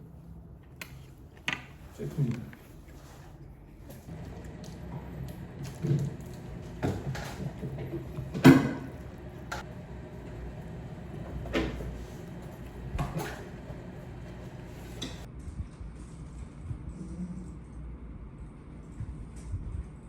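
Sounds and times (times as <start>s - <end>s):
objects knocking and clattering: 4.1s - 14.3s.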